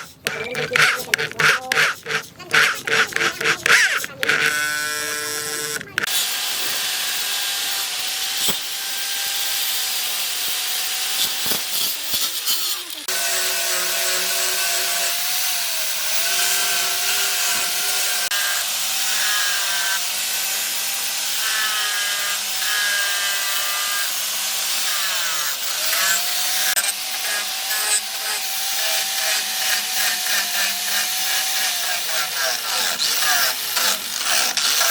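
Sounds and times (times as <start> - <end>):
power tool grinding a knife: 0.0 - 34.9.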